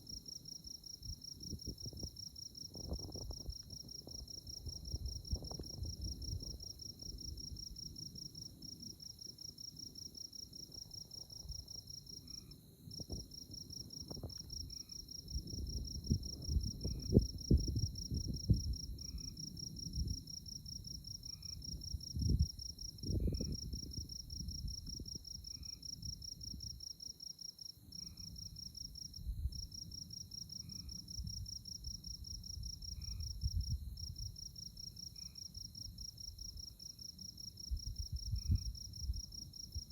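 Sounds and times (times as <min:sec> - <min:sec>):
insects pulsing trill: 0:00.0 - 0:39.9
soft insect chirp: 0:00.0 - 0:39.9.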